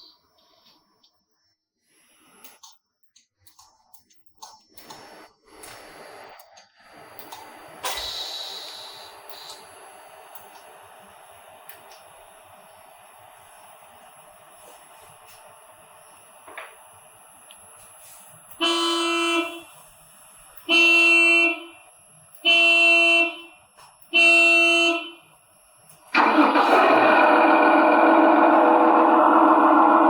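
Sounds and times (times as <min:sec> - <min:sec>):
toy excavator horn blasts: 0:18.6 - 0:19.8, 0:20.7 - 0:21.8, 0:22.4 - 0:23.5, 0:24.2 - 0:25.2.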